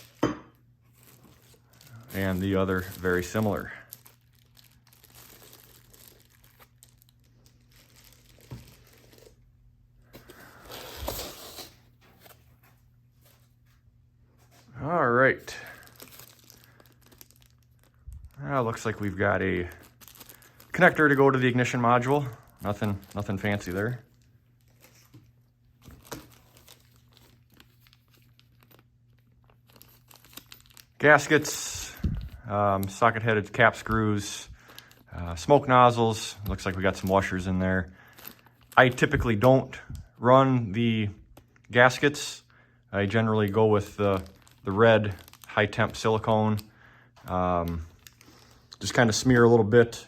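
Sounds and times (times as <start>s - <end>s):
packaging crinkling and rustling: 0.0s - 42.2s, 43.0s - 50.0s.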